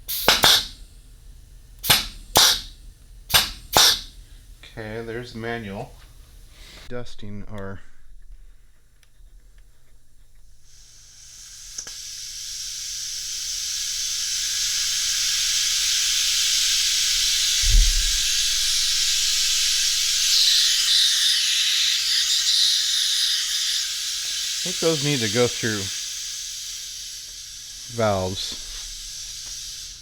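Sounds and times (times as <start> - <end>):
compressed air hissing: 0.0 - 6.9, 10.5 - 30.0
low thump: 17.6 - 19.1.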